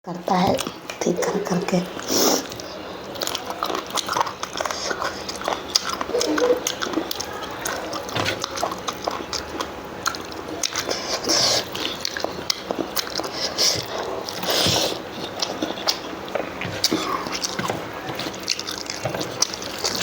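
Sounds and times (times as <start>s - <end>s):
wet chewing sounds: 0.3s - 20.0s.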